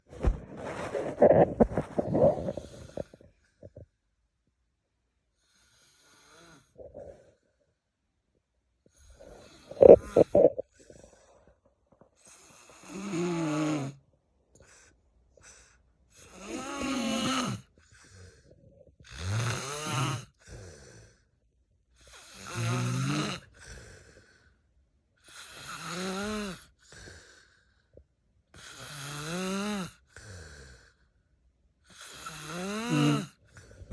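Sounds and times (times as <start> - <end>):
person snoring: 0.6 - 3.2, 5.5 - 7.4, 9.0 - 11.3, 12.3 - 14.0, 16.2 - 18.4, 19.1 - 21.2, 22.1 - 24.3, 25.2 - 27.5, 28.6 - 31.0, 31.9 - 33.9.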